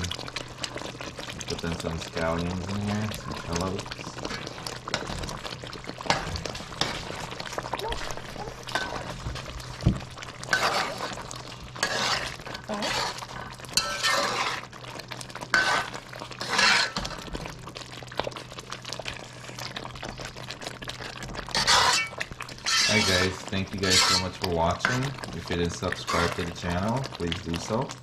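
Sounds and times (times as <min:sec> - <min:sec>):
low steady hum: 0:00.0 - 0:28.0
spoon scraping and clinking pot: 0:08.7 - 0:09.1, 0:10.5 - 0:11.2, 0:11.8 - 0:14.7, 0:15.5 - 0:17.2, 0:21.5 - 0:25.3, 0:25.9 - 0:26.5.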